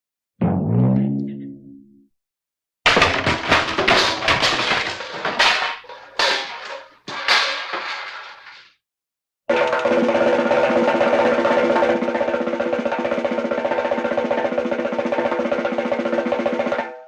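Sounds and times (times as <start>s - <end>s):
fast percussion roll: 9.5s - 17.0s.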